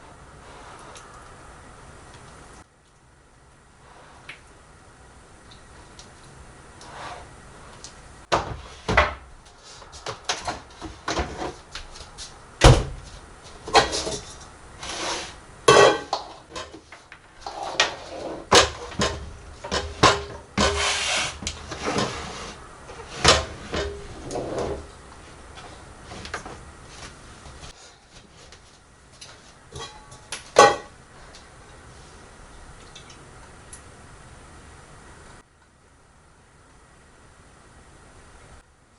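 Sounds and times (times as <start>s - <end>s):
steady hiss: 10.7s - 29.7s
dishes and utensils clattering: 13.7s - 14.5s, 15.7s - 16.8s, 17.4s - 21.0s, 29.7s - 30.9s.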